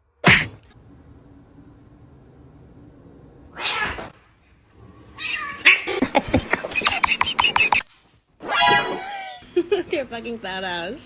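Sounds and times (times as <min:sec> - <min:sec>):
cat meowing: 0:05.2 - 0:05.9.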